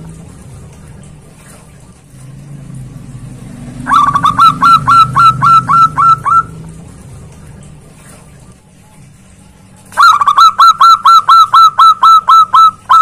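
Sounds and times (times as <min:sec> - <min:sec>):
low steady hum: 0:00.0 - 0:13.0
dove calling: 0:03.8 - 0:06.6, 0:10.0 - 0:13.0.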